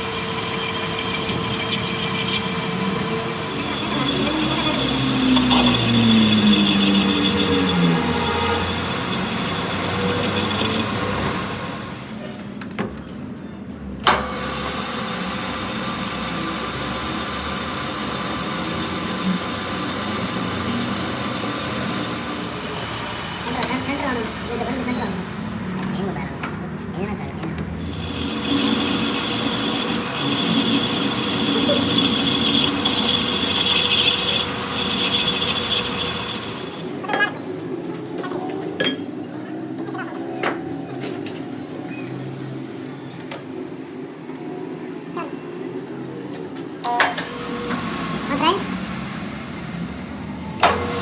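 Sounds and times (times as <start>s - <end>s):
machine running: 0.0s - 12.4s, 14.0s - 24.5s, 27.8s - 37.2s
power tool whining on metal: 0.0s - 12.4s, 14.0s - 25.0s, 27.8s - 37.4s, 46.9s - 49.7s, 50.6s - 51.0s.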